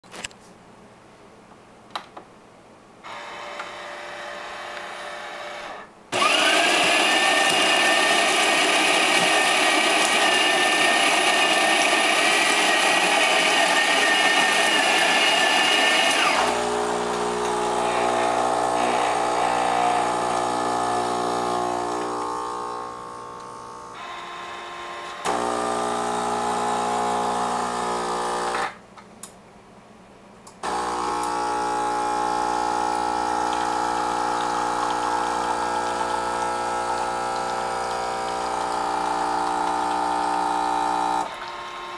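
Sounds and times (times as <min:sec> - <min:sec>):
espresso grinder whining: 0:05.6 - 0:28.7, 0:30.6 - 0:41.9
espresso machine pump humming: 0:06.2 - 0:24.3, 0:25.3 - 0:28.6, 0:30.6 - 0:41.9.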